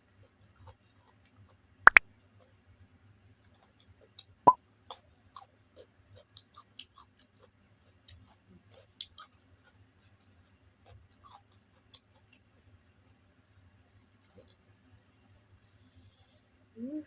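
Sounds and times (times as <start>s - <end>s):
wet chewing and mouth smacks: 0.2s - 2.5s, 3.4s - 12.5s.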